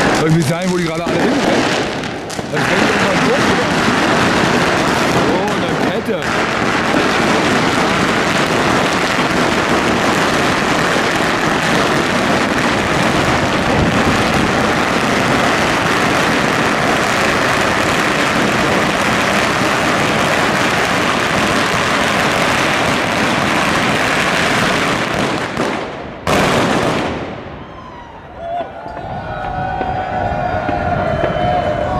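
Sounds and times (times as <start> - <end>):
firecrackers crackling: 0.0 - 27.7.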